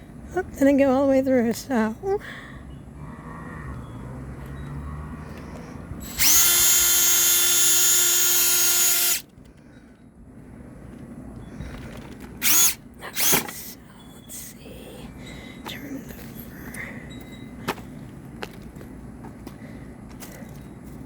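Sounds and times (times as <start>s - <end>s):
power drill motor whine: 6.0s - 9.3s, 12.4s - 13.5s.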